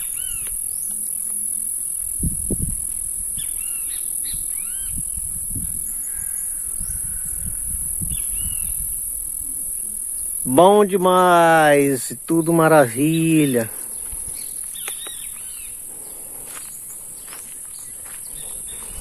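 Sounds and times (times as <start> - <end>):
insects trilling: 0.0 - 19.0
birds calling: 9.7 - 19.0.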